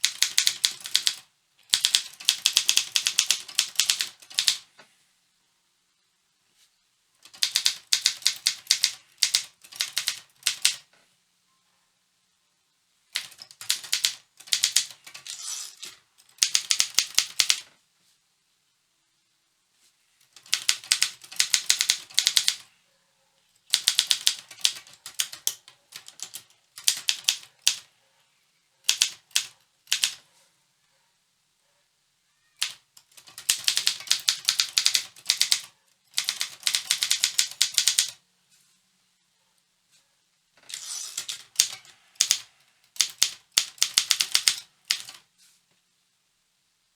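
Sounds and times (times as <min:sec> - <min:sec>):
manual typewriter typing: 0:00.0 - 0:04.7, 0:07.2 - 0:10.9, 0:13.2 - 0:17.7, 0:20.2 - 0:22.7, 0:23.7 - 0:27.9, 0:28.8 - 0:30.2, 0:32.6 - 0:38.2, 0:40.6 - 0:45.2.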